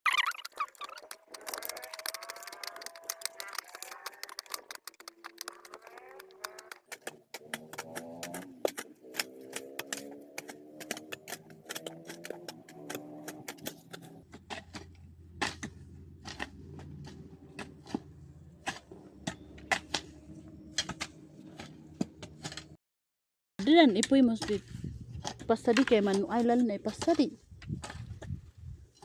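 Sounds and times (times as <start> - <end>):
rapid sharp clicks: 0.1 - 14.1.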